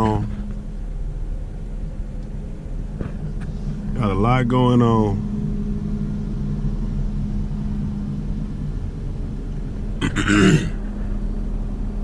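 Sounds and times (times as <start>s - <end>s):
road and engine drone: 0.0s - 12.0s
short grunt-like voice: 10.0s - 10.8s.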